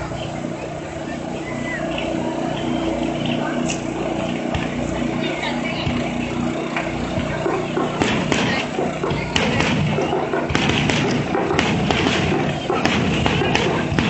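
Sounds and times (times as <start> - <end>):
people talking: 0.0 - 14.0
fireworks shells bursting: 6.9 - 14.0.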